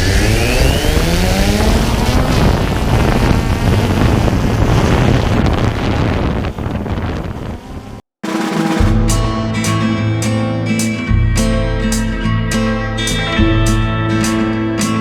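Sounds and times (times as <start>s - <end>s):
wind buffeting microphone: 0.0s - 8.0s.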